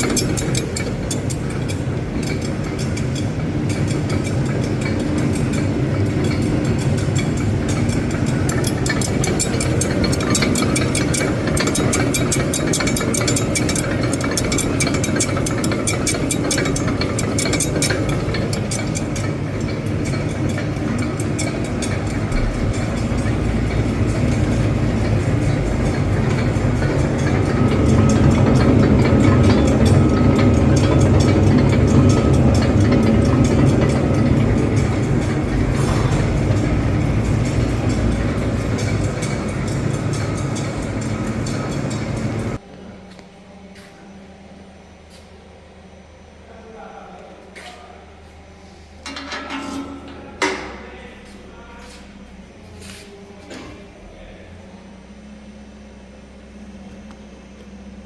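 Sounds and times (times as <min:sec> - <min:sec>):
crackling and clicking of grinding: 0:00.0 - 0:42.6
grinder motor humming: 0:00.0 - 0:42.6.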